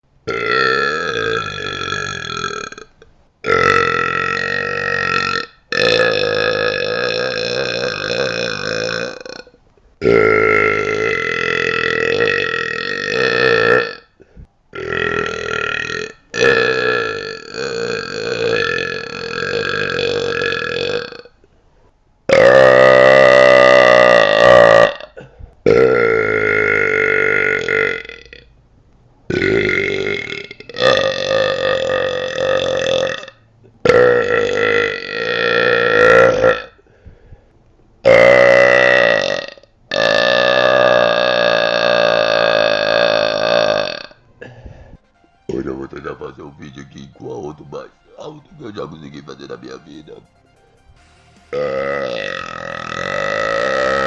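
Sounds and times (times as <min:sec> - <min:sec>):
man belching loudly: 0:00.3 - 0:14.1, 0:14.7 - 0:21.3, 0:22.3 - 0:28.5, 0:29.3 - 0:36.8, 0:38.0 - 0:44.2, 0:51.5 - 0:54.0.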